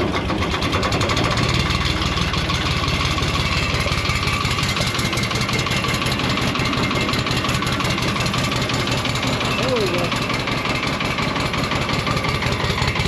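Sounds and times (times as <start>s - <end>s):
diesel tractor engine idling: 0.0s - 13.0s.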